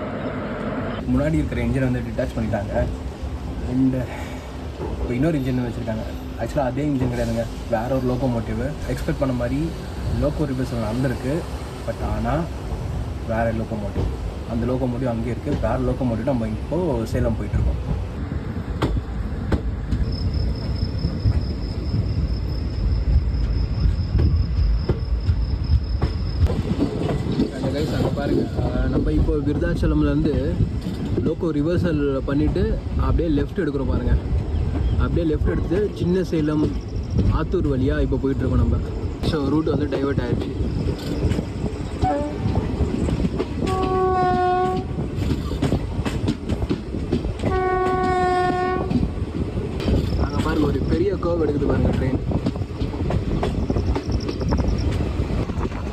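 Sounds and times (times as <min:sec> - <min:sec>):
train rumble: 0:00.0 - 0:55.9
locomotive horn blasts: 0:42.0 - 0:42.4, 0:43.6 - 0:45.0, 0:47.4 - 0:49.0.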